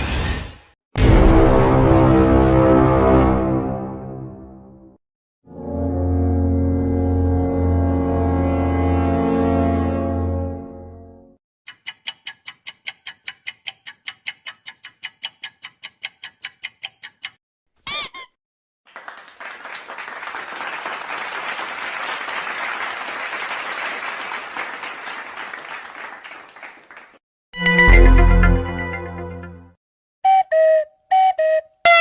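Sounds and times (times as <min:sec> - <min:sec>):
clock ticking quickly: 0:11.7 - 0:17.4
crowd applauding: 0:18.9 - 0:27.2
wavering high tone: 0:30.3 - 0:32.0.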